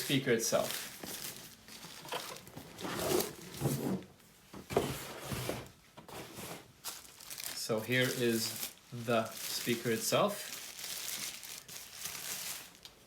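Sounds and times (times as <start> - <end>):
packaging rustling and scraping: 0.0 - 4.1, 4.7 - 13.0.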